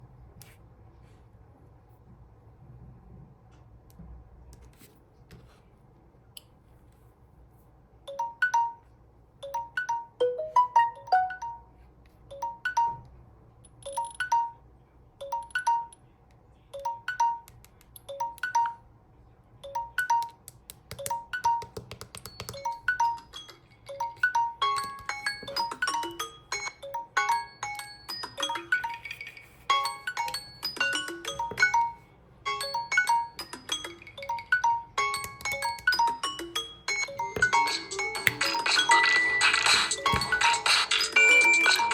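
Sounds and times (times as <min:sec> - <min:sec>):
phone chiming ringtone: 0:08.1 - 0:13.0, 0:22.4 - 0:41.9.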